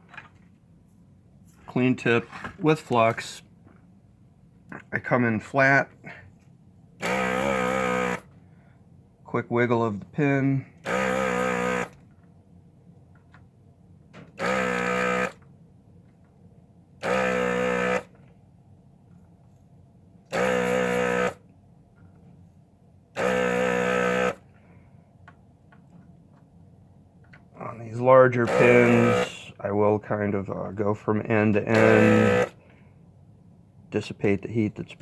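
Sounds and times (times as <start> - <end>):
vacuum pump buzzing: 7.0 - 8.7, 10.5 - 12.1, 14.2 - 15.6, 17.0 - 18.4, 20.3 - 21.5, 23.1 - 24.7, 27.6 - 29.6, 31.5 - 32.9.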